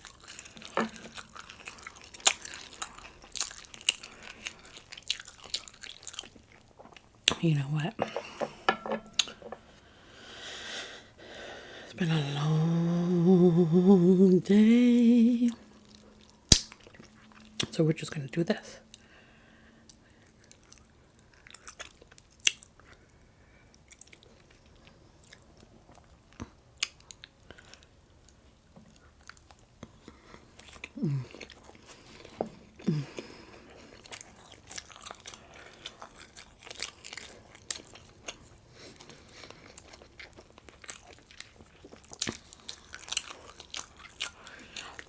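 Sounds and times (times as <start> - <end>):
chewing and biting food: 0.0 - 7.3, 19.9 - 23.1, 23.8 - 45.0
person humming: 11.9 - 15.7, 31.0 - 31.3.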